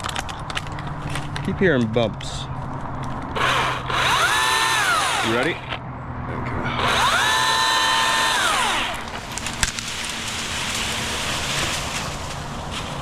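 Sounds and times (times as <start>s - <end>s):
electric chainsaw whining: 3.3s - 5.8s, 6.7s - 11.4s.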